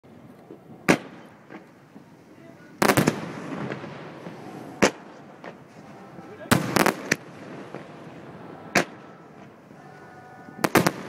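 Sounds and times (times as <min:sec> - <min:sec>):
fireworks bangs: 0:00.1 - 0:11.0.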